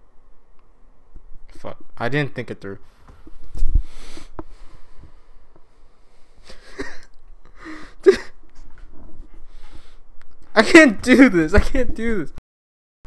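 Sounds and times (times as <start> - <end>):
man breathing and sniffing: 2.9 - 10.2.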